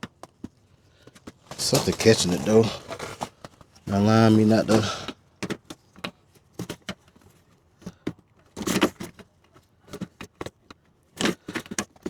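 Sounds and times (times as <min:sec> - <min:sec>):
scraping rattles: 0:01.5 - 0:03.3.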